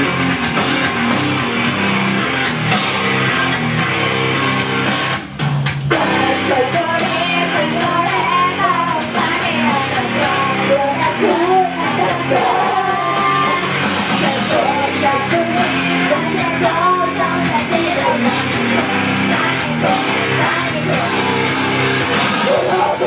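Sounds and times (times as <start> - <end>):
drums: 0.0 - 23.0
rock guitars: 0.0 - 23.0
person singing: 5.9 - 23.0
shouted vocals: 6.0 - 23.0.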